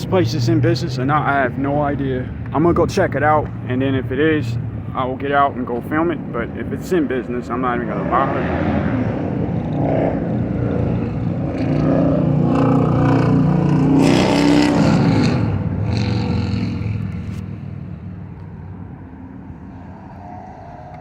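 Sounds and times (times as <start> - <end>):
road traffic: 0.0 - 21.0
vehicle engine passing by: 7.8 - 21.0.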